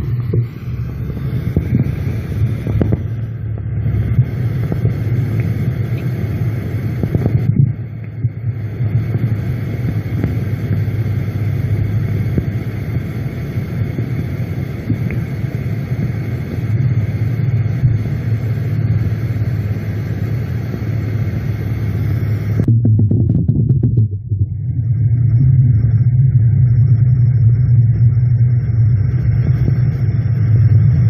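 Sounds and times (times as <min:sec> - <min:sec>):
low rumble: 0:00.0 - 0:31.0
hiss: 0:08.5 - 0:22.6.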